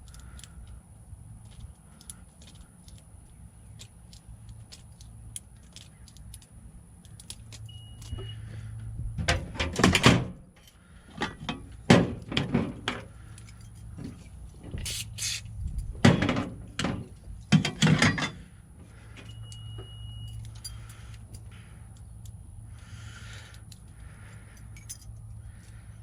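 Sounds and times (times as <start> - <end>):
door lock clicking and clunking: 9.2 - 10.4.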